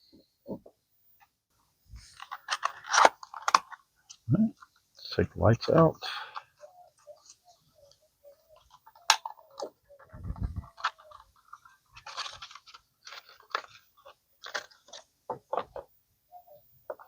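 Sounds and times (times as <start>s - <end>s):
plastic clicking and scraping: 2.1s - 4.8s, 5.7s - 15.9s.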